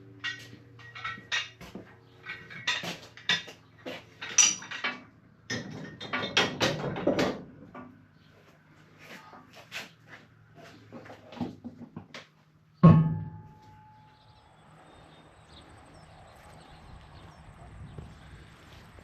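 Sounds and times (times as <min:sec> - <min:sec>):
metal fencing hardware clinking: 0:00.2 - 0:01.6, 0:04.2 - 0:06.0.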